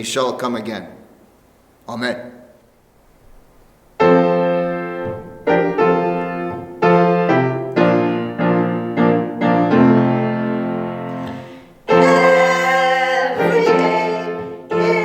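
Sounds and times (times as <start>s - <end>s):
piano playing slow chords: 4.0s - 15.0s.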